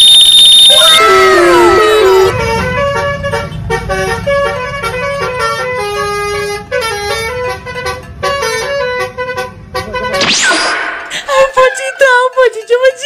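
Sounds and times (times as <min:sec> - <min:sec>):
musical bus horn tune: 0:00.0 - 0:10.4.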